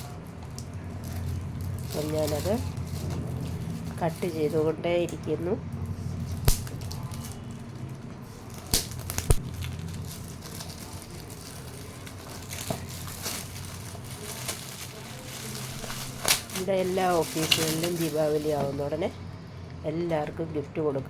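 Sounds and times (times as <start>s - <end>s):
wrapping crinkling: 0.0s - 5.2s, 5.8s - 19.2s
sharp snapping clicks: 6.4s - 6.8s.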